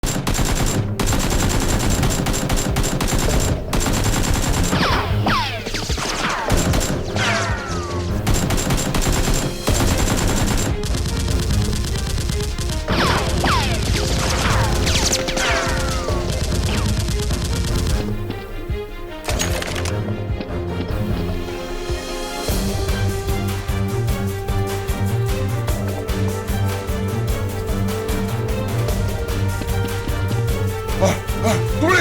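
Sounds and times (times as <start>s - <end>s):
rapid automatic gunfire: 0.0s - 5.2s, 5.8s - 7.0s, 8.2s - 15.0s.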